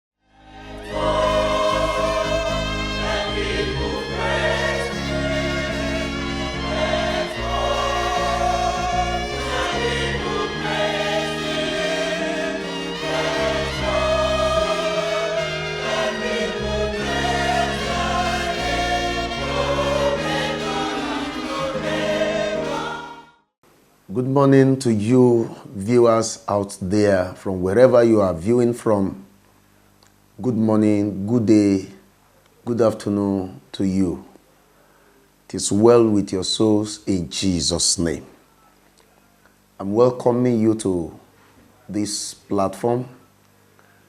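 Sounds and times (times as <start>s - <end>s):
gospel choir singing: 0.3s - 23.4s
bass and keyboard chords: 0.4s - 23.3s.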